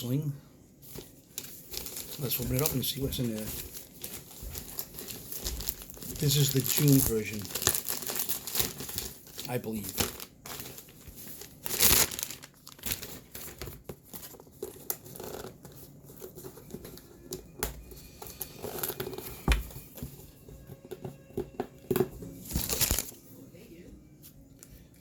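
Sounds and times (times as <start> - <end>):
cardboard packaging torn open: 1.3 - 15.7, 18.2 - 19.6, 22.4 - 23.2.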